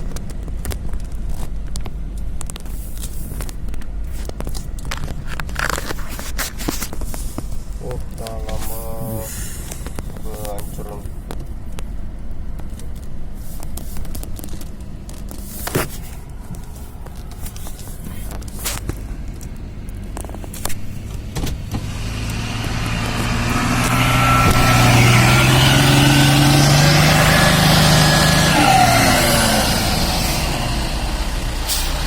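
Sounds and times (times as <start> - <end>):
truck engine revving: 20.9 - 32.0.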